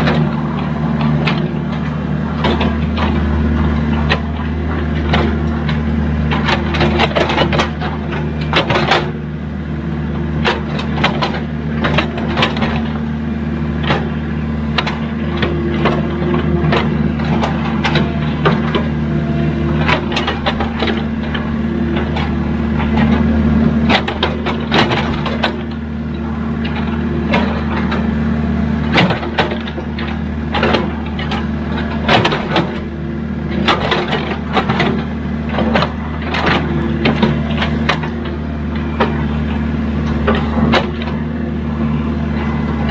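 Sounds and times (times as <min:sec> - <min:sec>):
diesel engine under load: 0:00.0 - 0:42.9.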